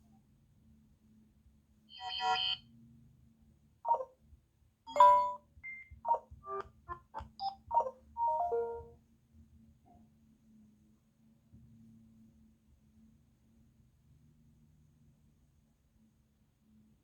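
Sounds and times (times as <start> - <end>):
electronic chime ringtone: 4.9 - 5.4, 7.4 - 8.9.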